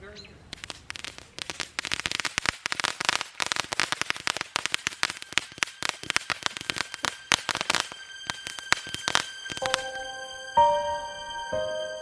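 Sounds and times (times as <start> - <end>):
fireworks crackling: 0.0 - 12.0
music: 4.7 - 12.0.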